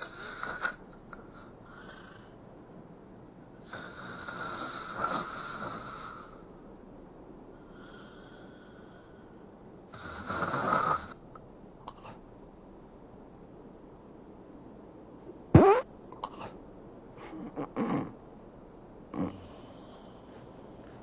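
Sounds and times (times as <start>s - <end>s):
faint breath: 0.0s - 2.5s, 3.6s - 6.6s, 7.4s - 11.2s, 19.3s - 21.0s
girl snoring: 3.7s - 6.4s, 10.0s - 11.2s, 17.3s - 18.2s, 19.1s - 20.0s.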